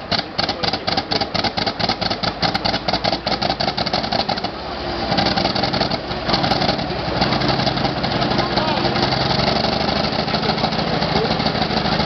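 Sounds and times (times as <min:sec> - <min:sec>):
tank engine cranking and running: 0:00.0 - 0:12.0.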